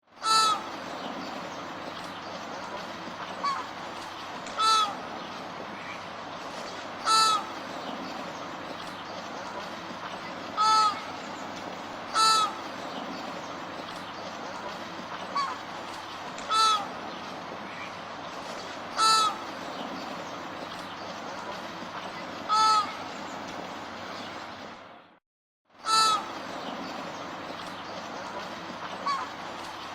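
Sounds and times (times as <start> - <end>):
flamingo calling: 0.2 - 0.7, 4.6 - 5.1, 7.0 - 7.5, 10.6 - 11.2, 12.1 - 12.7, 16.4 - 17.0, 19.0 - 19.5, 22.5 - 23.0, 25.8 - 26.3.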